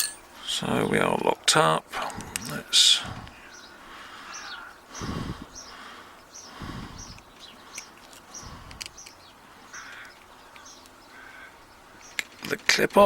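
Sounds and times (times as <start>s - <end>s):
sharp metallic clicks: 0.0s - 0.2s.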